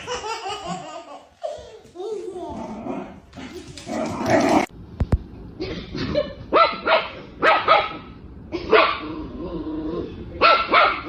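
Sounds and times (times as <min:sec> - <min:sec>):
dog barking: 0:06.5 - 0:09.0, 0:10.4 - 0:11.0.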